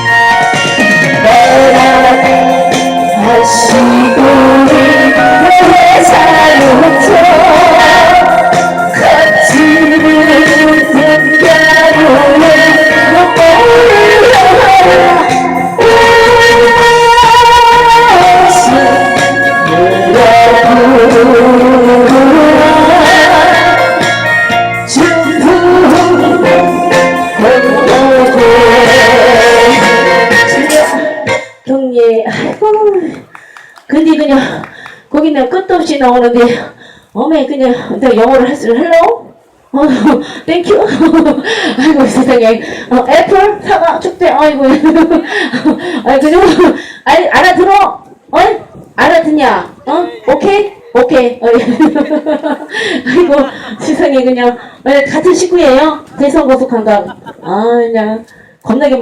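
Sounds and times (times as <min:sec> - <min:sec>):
loud backing music: 0:00.0 - 0:31.4
woman singing with vibrato: 0:00.0 - 0:59.0.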